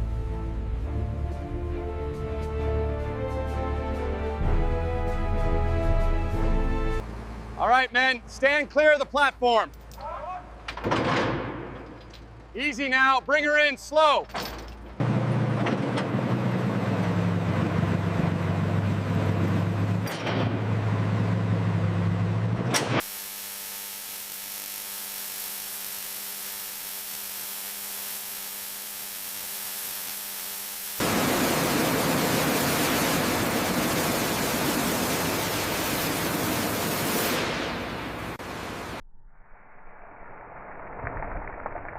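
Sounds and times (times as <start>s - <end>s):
loud even rushing noise: 31.0s - 39.0s.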